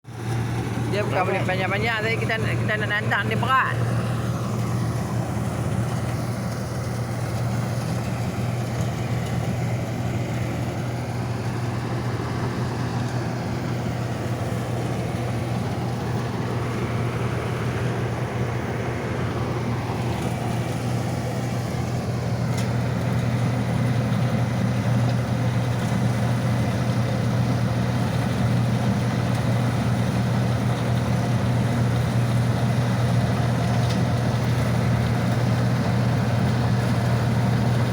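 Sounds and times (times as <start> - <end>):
combine harvester engine drone: 0.0 - 37.9.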